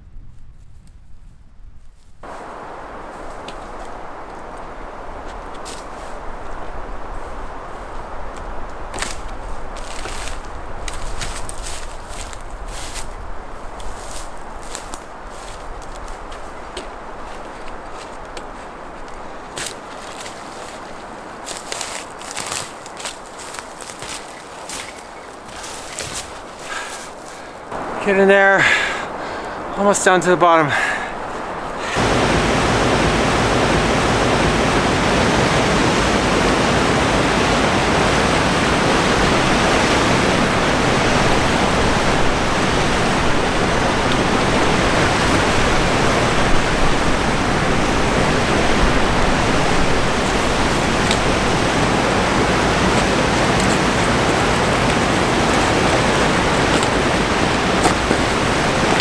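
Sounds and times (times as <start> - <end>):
waterfall roaring: 2.2 - 10.8, 27.7 - 59.0.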